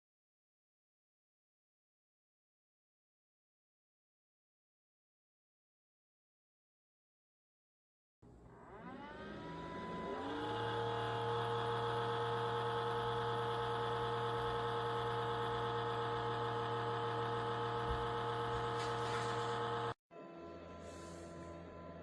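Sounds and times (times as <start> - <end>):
small electric motor whining: 8.3 - 20.0.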